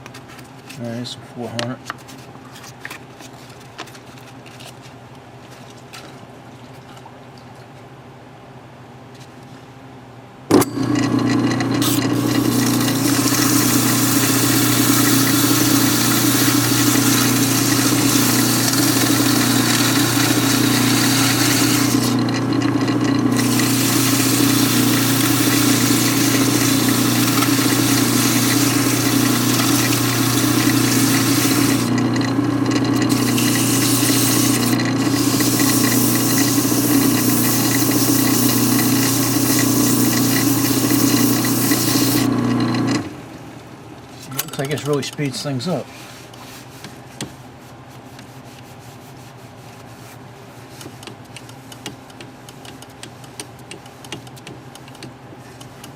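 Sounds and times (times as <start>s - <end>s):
lathe humming: 10.8s - 43.2s
sandpaper rasping on spinning metal: 11.8s - 22.3s, 23.3s - 32.0s, 32.9s - 42.3s.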